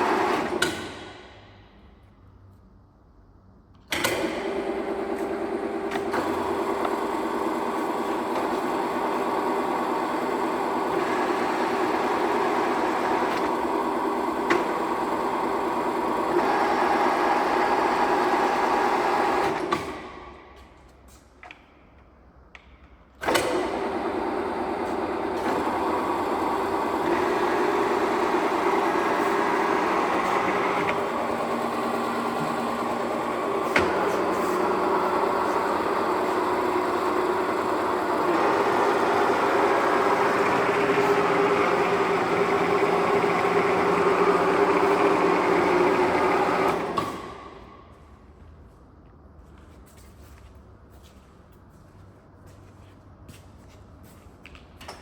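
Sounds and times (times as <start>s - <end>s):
milling machine humming: 4.7s - 19.6s, 23.8s - 47.2s.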